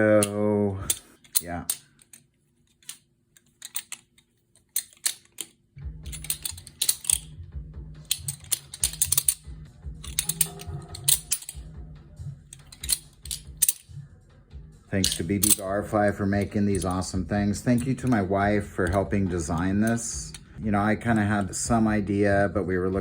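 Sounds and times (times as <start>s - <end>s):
quiet background music: 0.0s - 23.0s
metallic clicks of flipping opener: 4.6s - 7.4s, 8.0s - 11.6s, 12.5s - 14.0s.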